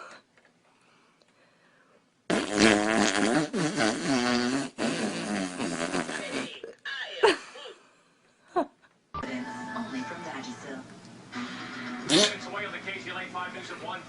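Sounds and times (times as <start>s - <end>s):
long loud fart: 2.3s - 6.6s, 12.0s - 12.4s.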